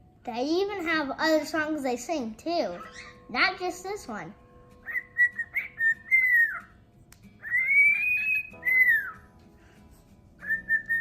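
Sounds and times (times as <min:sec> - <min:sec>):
pet bird whistling: 0:04.8 - 0:06.8, 0:07.4 - 0:09.4, 0:10.4 - 0:11.0.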